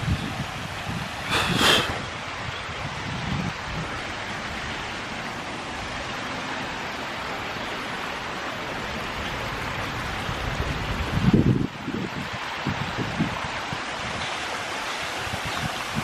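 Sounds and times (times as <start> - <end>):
wind buffeting microphone: 0.0 - 5.1, 9.1 - 14.4, 15.2 - 16.0
waterfall rushing: 0.0 - 16.0.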